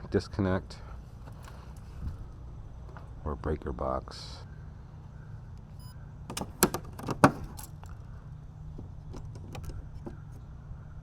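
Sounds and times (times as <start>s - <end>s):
steady low hum: 0.0s - 11.0s
sharp metallic clicks and rattles: 6.3s - 8.1s, 8.8s - 10.3s.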